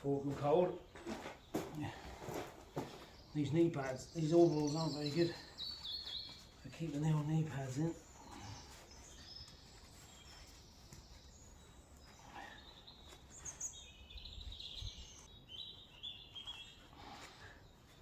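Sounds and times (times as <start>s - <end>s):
low steady background noise: 0.0s - 18.0s
small bird chirping and trilling: 3.2s - 16.9s.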